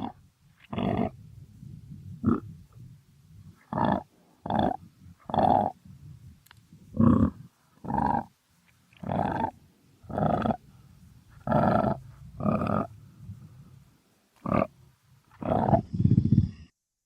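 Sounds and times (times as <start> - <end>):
crocodile grunting: 0.0 - 1.2, 2.2 - 2.5, 3.7 - 5.8, 6.9 - 8.3, 9.0 - 10.6, 11.4 - 13.0, 14.4 - 14.7, 15.4 - 16.6.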